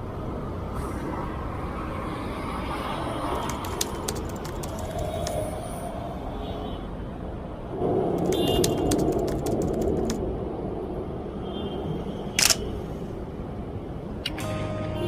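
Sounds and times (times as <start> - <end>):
street traffic noise: 0.0 - 15.0
camera shutter burst clicks: 12.4 - 12.6.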